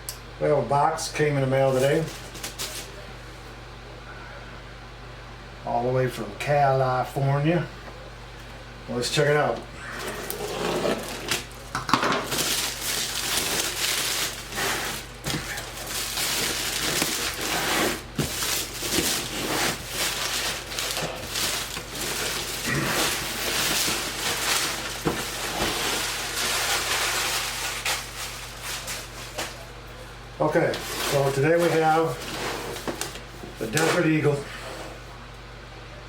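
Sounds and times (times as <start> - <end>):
cardboard rustling and crinkling: 1.7 - 2.9, 9.9 - 34.6.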